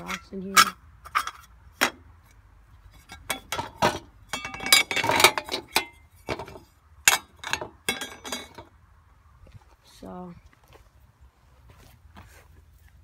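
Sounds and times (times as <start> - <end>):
rocks clinking and clattering: 3.0 - 8.7.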